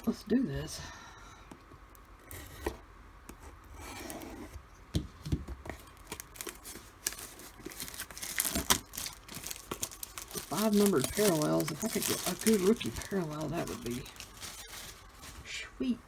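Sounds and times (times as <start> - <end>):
cardboard being handled: 5.2 - 15.5
plastic wrapping tearing: 5.8 - 15.4.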